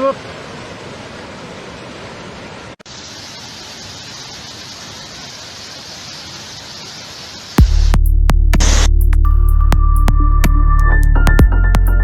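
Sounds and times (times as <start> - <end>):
floodwater rushing over spillway: 0.0 - 7.6.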